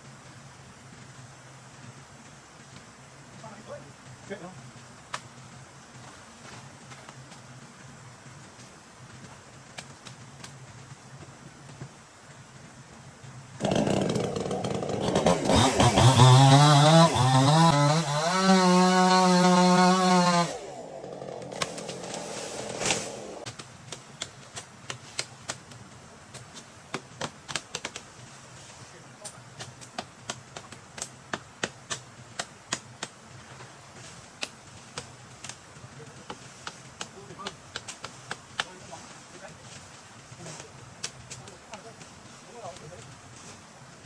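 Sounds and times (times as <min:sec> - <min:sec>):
chainsaw engine revving: 0:13.6 - 0:23.5.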